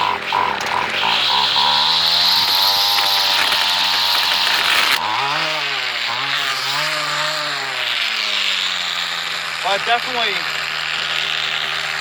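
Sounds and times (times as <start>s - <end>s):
string trimmer engine: 0.0s - 12.0s
hiss of cutting brush: 1.0s - 5.0s.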